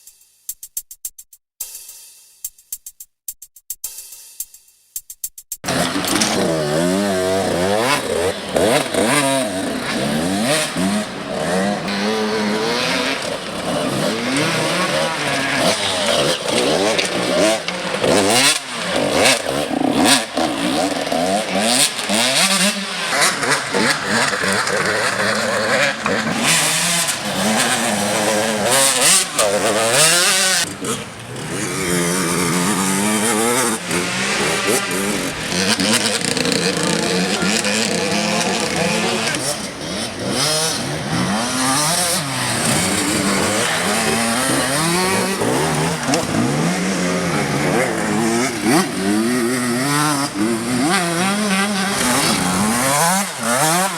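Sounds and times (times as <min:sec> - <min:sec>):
dirt bike engines revving: 0:05.6 - 0:53.9.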